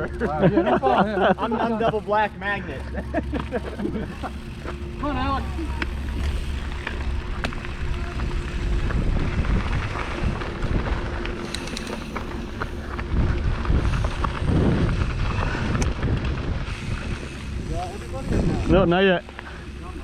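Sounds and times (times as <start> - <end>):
wind buffeting the microphone: 3.8 - 20.0.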